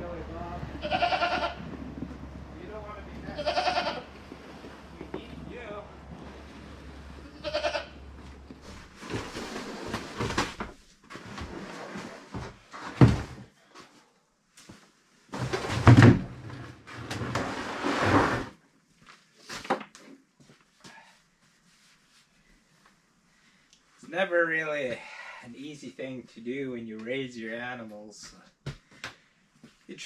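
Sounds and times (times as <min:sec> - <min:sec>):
goat bleating: 0:00.7 - 0:01.7, 0:03.1 - 0:04.2, 0:07.2 - 0:08.0.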